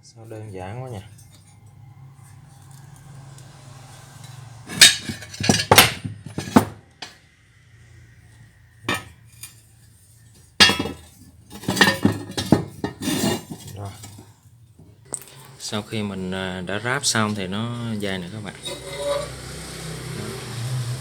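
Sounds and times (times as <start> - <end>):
steel plates clanking together: 4.3 - 6.8, 8.8 - 9.6, 10.6 - 14.2, 18.2 - 19.4.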